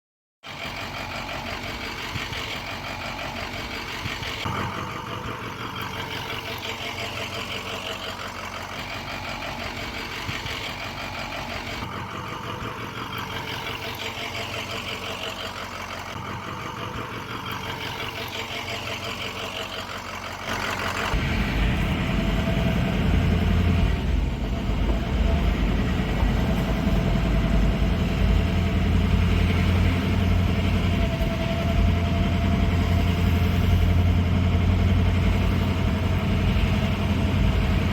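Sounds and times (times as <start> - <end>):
vehicle engine running: 0.4 - 37.9.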